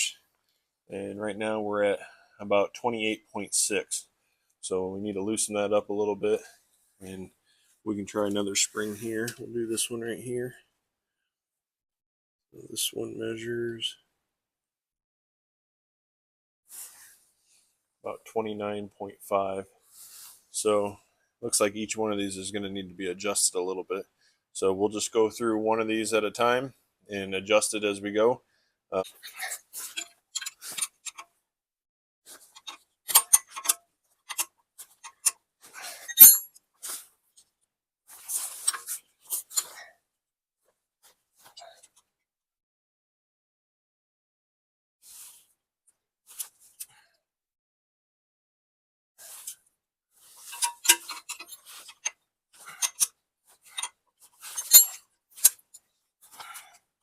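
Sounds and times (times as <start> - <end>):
wrench clicking on metal: 32.6 - 34.4, 50.5 - 52.1, 52.7 - 53.1, 54.6 - 55.0
ringing metal clink: 36.1 - 36.5, 54.6 - 55.0.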